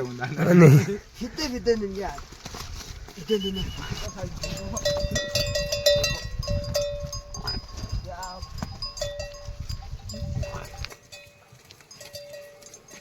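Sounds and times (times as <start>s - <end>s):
sheep bells clinking: 3.2s - 13.0s.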